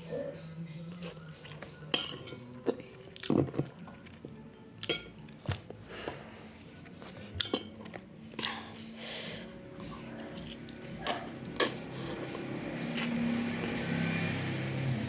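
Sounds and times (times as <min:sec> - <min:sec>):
spoon clinking against dish: 0:01.4 - 0:02.5, 0:04.8 - 0:05.2, 0:07.3 - 0:09.0.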